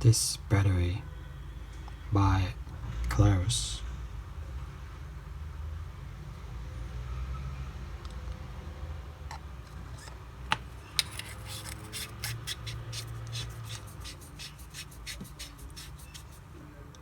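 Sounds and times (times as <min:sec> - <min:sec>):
scratchy ticks of cap turning: 0:10.5 - 0:16.4.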